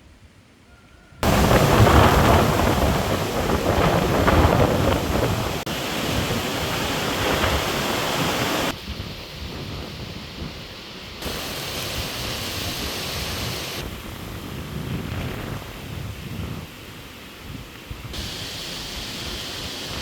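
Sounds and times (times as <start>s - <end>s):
wind: 0.0s - 20.0s
low thunder rumble: 1.2s - 11.4s
heavy rain: 1.2s - 20.0s.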